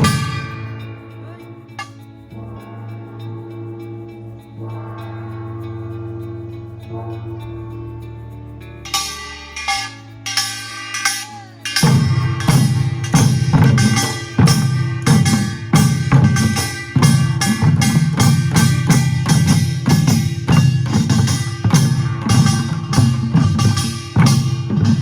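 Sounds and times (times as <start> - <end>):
drums beating: 0.0 - 2.0, 8.9 - 25.0
small gongs clanging: 0.0 - 8.0, 8.7 - 25.0.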